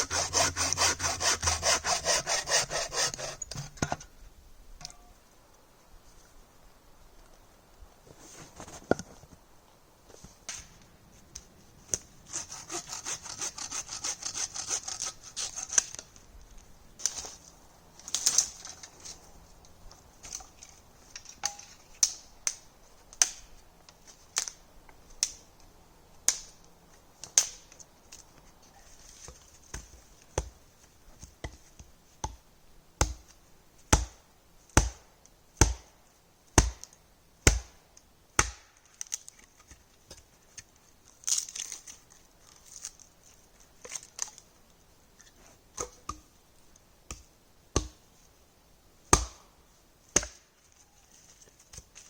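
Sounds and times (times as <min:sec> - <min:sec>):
hand saw cutting wood: 0:00.0 - 0:03.8, 0:12.3 - 0:16.0.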